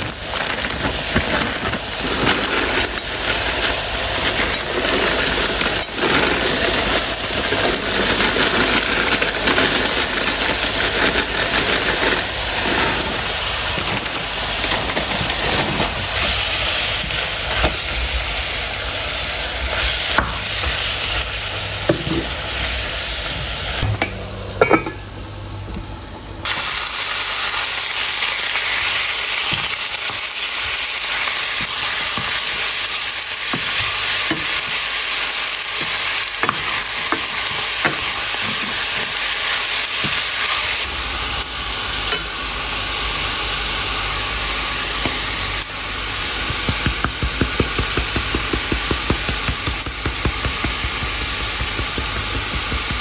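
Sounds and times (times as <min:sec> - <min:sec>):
meat sizzling in a pan: 0:26.4 - 0:40.9, 0:41.6 - 0:53.0.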